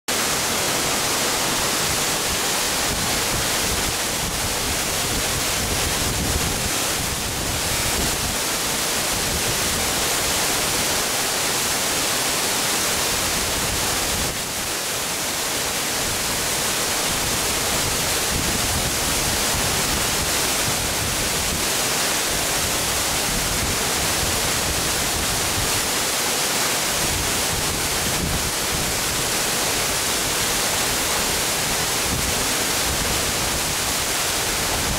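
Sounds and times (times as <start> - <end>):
waterfall crashing: 0.1 - 34.9.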